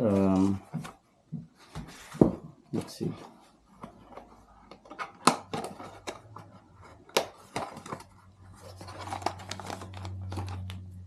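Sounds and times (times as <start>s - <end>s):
packaging rustling: 3.7s - 11.0s.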